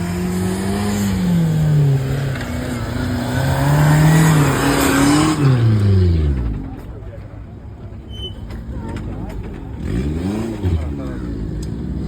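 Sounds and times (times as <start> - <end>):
car engine revving: 0.0 - 6.8, 9.4 - 12.0.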